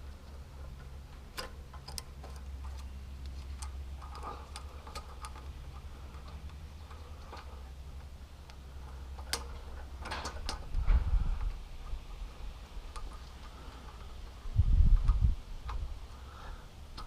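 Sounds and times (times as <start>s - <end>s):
steady low hum: 0.0s - 17.0s
small metal parts clicking: 0.2s - 10.8s.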